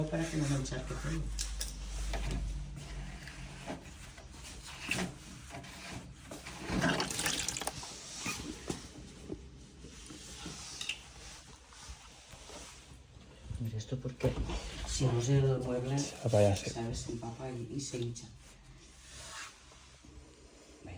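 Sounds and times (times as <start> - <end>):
rubbing and knocking from handling: 0.0 - 13.1
water splashing out in spurts: 6.8 - 7.9.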